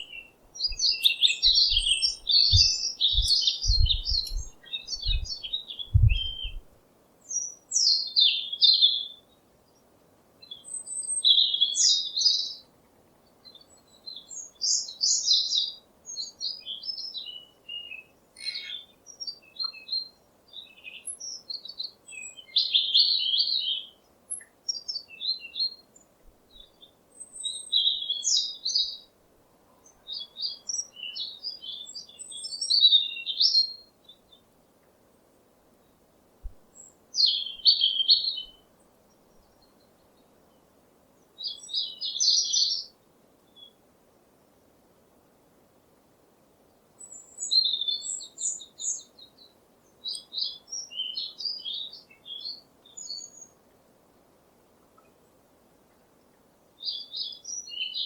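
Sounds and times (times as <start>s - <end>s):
birds chirping: 0.0s - 6.7s
low thumps: 1.7s - 6.7s.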